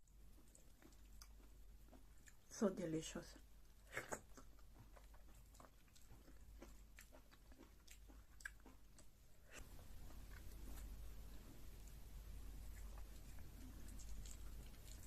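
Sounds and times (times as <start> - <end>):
person chewing close to microphone: 0.0 - 2.5, 3.4 - 15.0.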